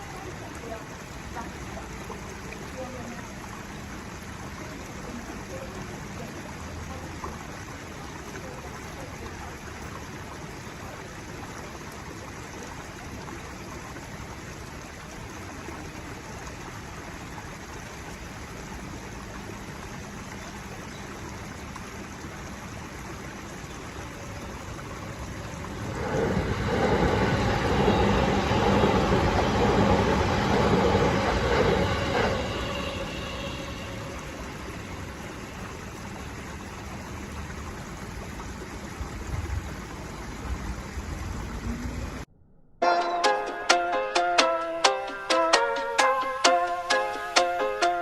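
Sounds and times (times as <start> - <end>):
electric train approaching: 0.0 - 4.5, 23.2 - 38.0, 41.0 - 48.0
outdoor background hiss: 0.0 - 42.3, 43.2 - 48.0.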